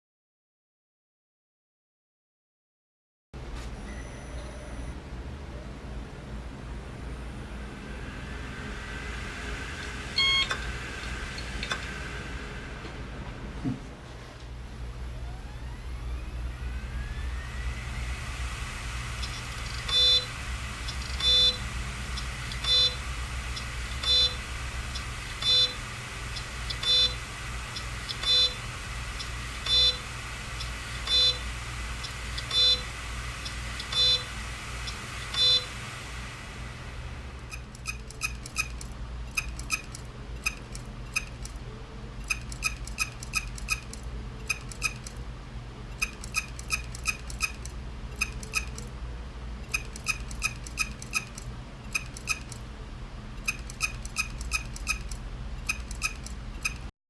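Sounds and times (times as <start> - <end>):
hard disk drive whine: 3.6 - 56.9
hard drive clicking: 37.4 - 41.6, 42.2 - 45.2, 46.0 - 49.0, 49.7 - 52.7, 53.4 - 56.9.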